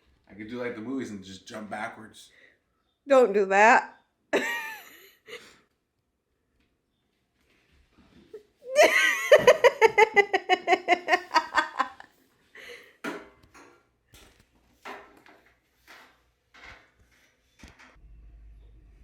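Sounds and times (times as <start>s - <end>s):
person laughing hard: 4.4s - 5.5s, 8.7s - 12.0s.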